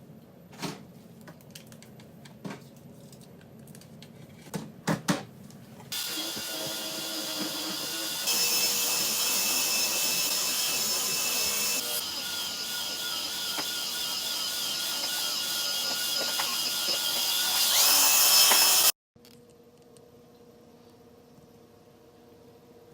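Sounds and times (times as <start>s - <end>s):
small electric motor whirring: 5.9s - 19.0s.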